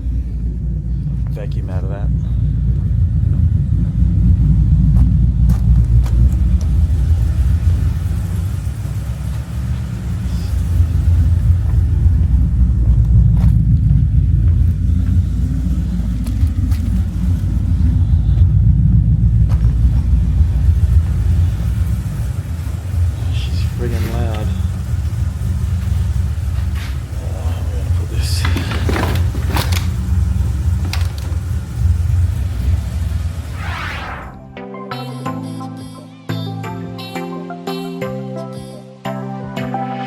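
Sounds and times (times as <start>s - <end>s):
car engine idling: 0.0s - 34.6s.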